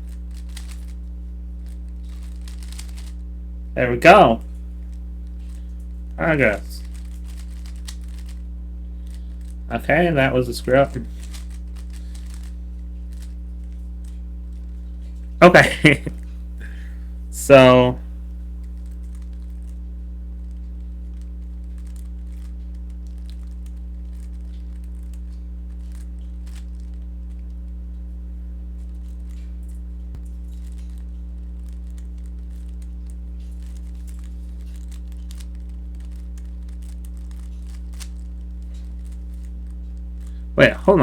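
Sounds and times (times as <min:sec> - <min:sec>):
low electrical hum: 0:00.0 - 0:41.0
plastic puzzle cube clicking: 0:00.3 - 0:00.9, 0:01.6 - 0:03.1, 0:11.2 - 0:12.5.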